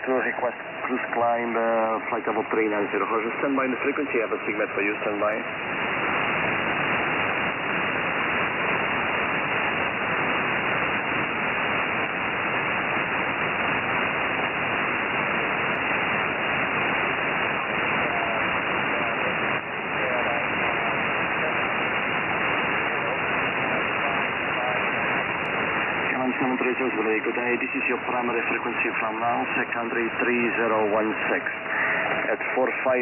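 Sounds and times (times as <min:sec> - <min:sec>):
faint radio warbling: 0:00.0 - 0:05.6, 0:13.0 - 0:33.0
radio static hiss: 0:00.0 - 0:33.0.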